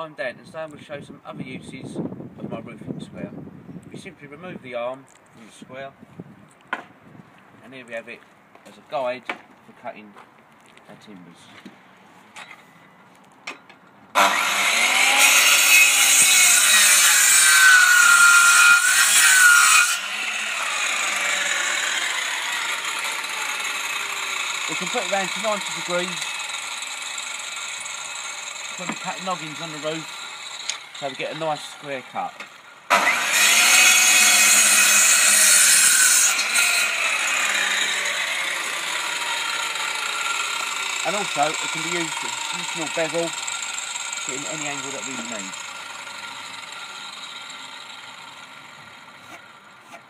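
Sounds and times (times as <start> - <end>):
circular saw cutting timber: 14.1 - 50.0.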